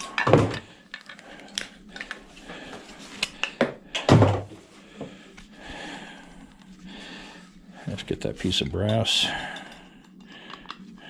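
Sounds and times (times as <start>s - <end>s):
plastic and metal parts clattering: 0.0s - 2.3s.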